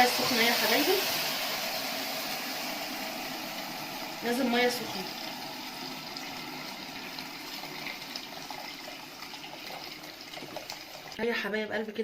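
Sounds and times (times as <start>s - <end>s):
water pouring from a kettle: 0.0s - 11.2s.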